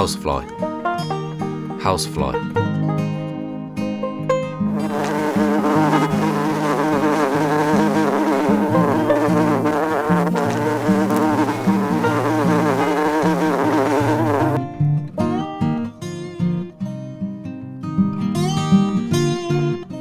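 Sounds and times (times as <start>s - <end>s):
housefly buzzing: 4.7s - 14.6s.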